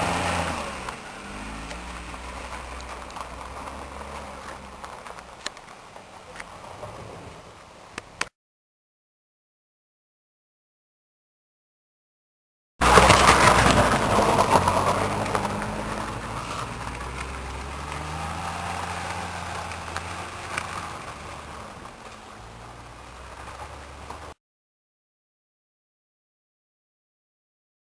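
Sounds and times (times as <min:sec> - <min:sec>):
motor vehicle moving away: 0:00.0 - 0:08.2, 0:12.8 - 0:24.4.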